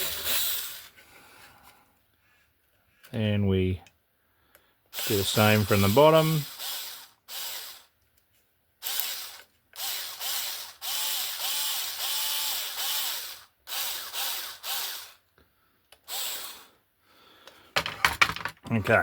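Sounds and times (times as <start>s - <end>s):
small power drill bursts: 0.0s - 0.9s, 4.9s - 7.9s, 8.8s - 15.2s, 16.0s - 16.7s.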